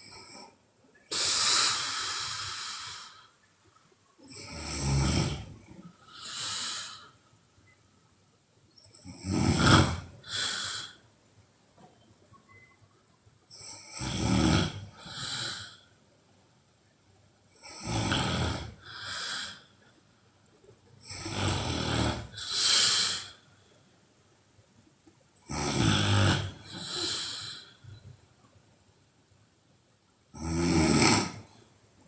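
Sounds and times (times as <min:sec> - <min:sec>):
woman snoring loudly: 0:04.3 - 0:05.5, 0:09.0 - 0:11.0, 0:13.6 - 0:15.8, 0:17.6 - 0:19.6, 0:21.0 - 0:23.3, 0:25.4 - 0:27.7, 0:30.4 - 0:31.5.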